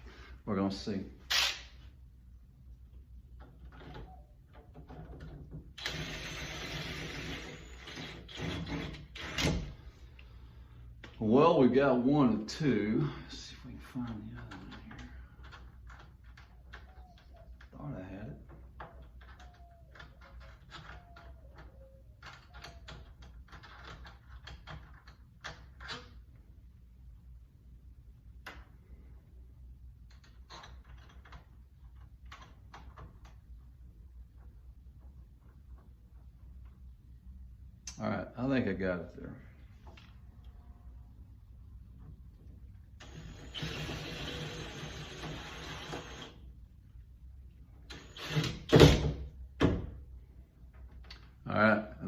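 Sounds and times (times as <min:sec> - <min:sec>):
cordless drill driving screws: 0:01.3 - 0:01.7, 0:05.8 - 0:09.7, 0:43.0 - 0:46.4, 0:47.9 - 0:49.0.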